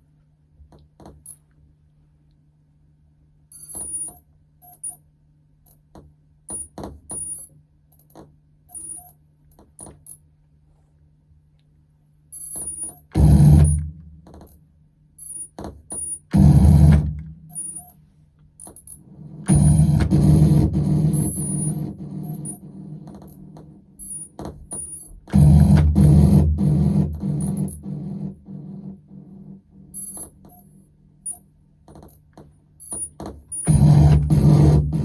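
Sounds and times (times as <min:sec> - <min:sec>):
low electronic hum: 0:16.3 - 0:31.8
harsh distorted noise burst: 0:19.1 - 0:23.0.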